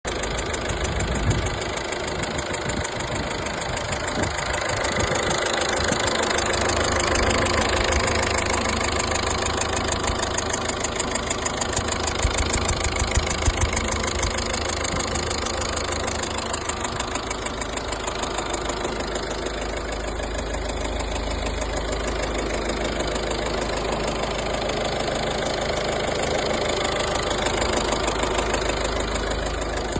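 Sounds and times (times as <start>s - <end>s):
engine running steadily: 0.1s - 29.9s.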